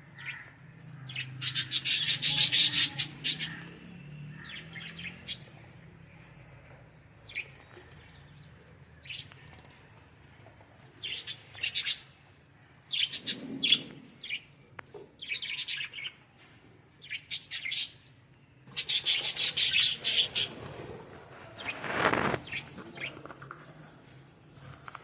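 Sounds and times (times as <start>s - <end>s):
brief rustling: 20.5s - 22.9s.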